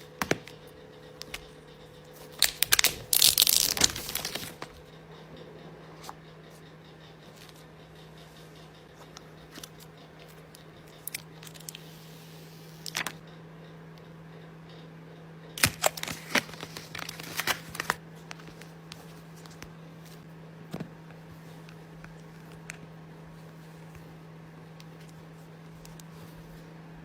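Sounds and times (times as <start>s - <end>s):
steady low hum: 0.0s - 27.0s
clicks and rustles of packaging: 2.3s - 4.8s, 12.8s - 13.2s, 15.6s - 20.9s.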